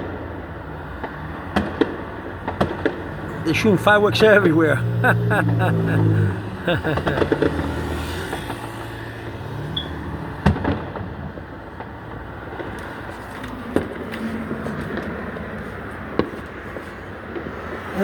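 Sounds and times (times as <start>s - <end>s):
firework pops and crackles: 1.0s - 3.1s, 10.4s - 18.0s.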